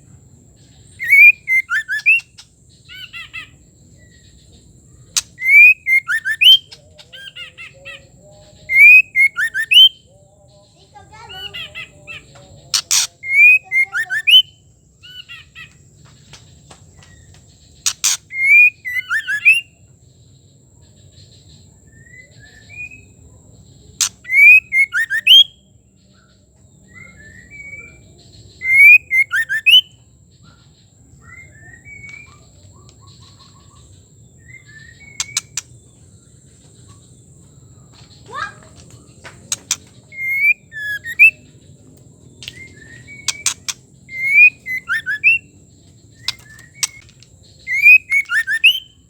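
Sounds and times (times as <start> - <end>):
soft bird chirps: 0.0 - 49.0
bird whistled song phrases: 0.9 - 4.3, 5.1 - 10.1, 11.1 - 15.6, 17.1 - 19.8, 21.8 - 23.2, 24.0 - 25.6, 26.9 - 30.0, 31.2 - 35.7, 38.2 - 41.7, 42.4 - 49.0
sharp click: 39.5 - 39.9.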